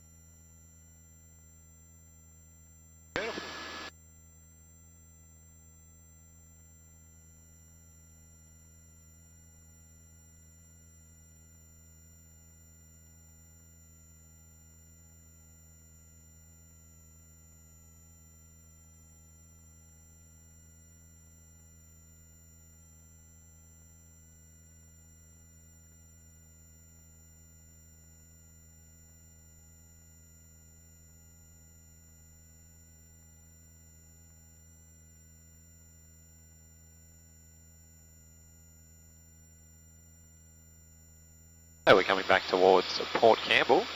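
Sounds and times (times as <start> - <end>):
faint high whine: 3.0 - 3.9, 5.7 - 43.9
low electrical hum: 3.2 - 3.9.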